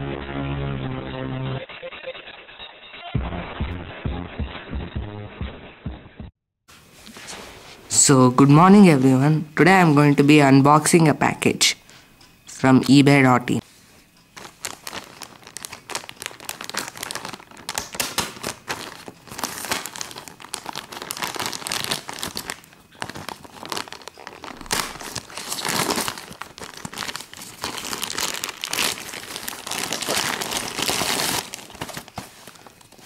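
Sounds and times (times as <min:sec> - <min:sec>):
package wrapping tearing and crinkling: 0:14.4 - 0:33.0.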